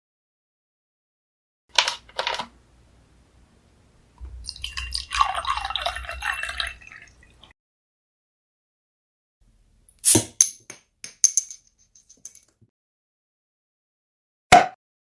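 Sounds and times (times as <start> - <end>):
liquor pouring into a glass: 4.2 - 7.5.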